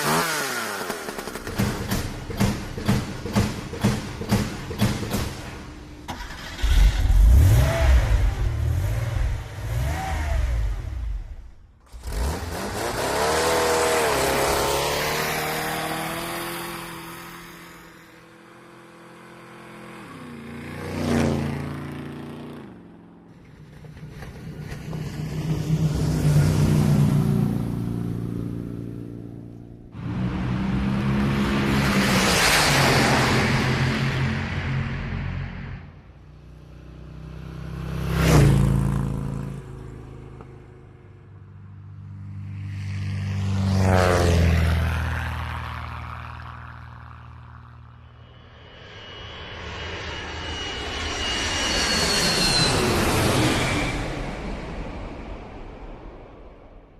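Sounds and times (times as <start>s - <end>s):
car engines revving past: 6.1s - 41.0s, 42.0s - 48.0s.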